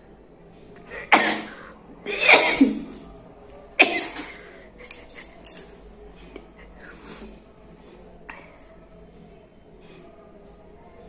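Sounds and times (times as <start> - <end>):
person sneezing: 0.9 - 3.0.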